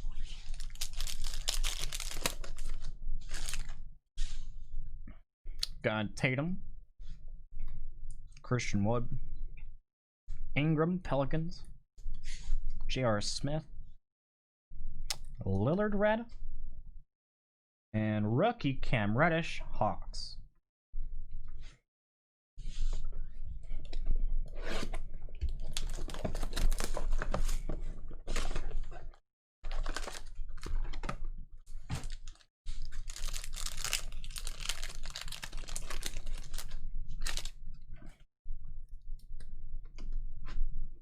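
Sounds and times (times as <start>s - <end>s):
card packs tearing open: 0.3s - 3.8s, 25.6s - 27.2s, 29.7s - 30.8s, 32.0s - 37.6s.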